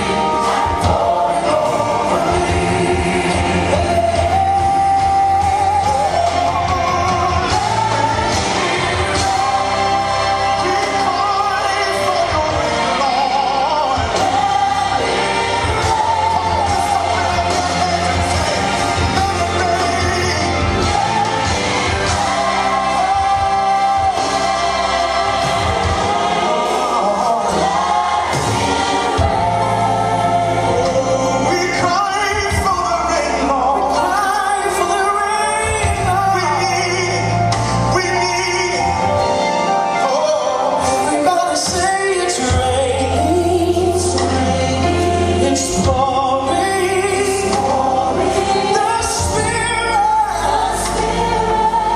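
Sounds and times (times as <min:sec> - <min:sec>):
full band playing: 0:00.0 - 0:51.9
voices singing together: 0:00.0 - 0:51.9.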